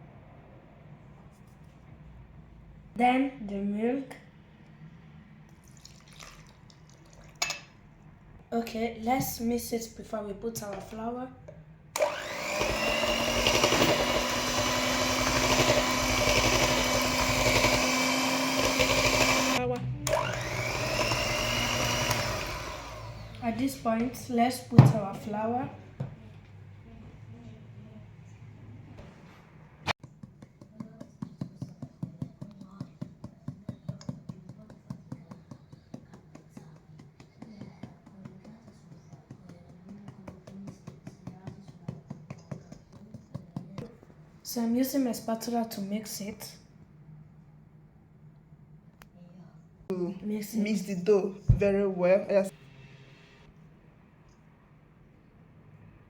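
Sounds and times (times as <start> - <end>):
electric mixer whining: 12.0 - 23.5.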